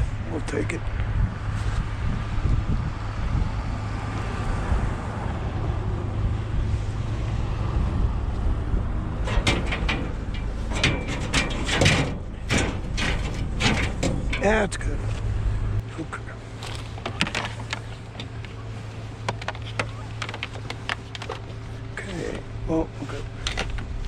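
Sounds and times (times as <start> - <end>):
vehicle engine idling: 8.0 - 24.0
scrap metal clanking: 9.2 - 15.3.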